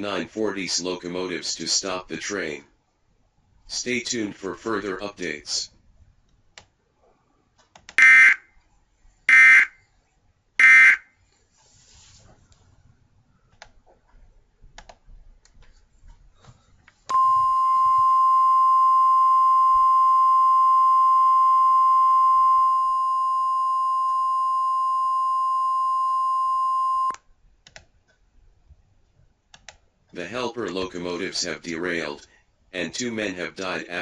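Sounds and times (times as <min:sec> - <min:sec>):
faint clicks: 0:14.8 - 0:15.8, 0:27.1 - 0:28.2, 0:29.5 - 0:29.8
steady high beep: 0:17.1 - 0:27.2.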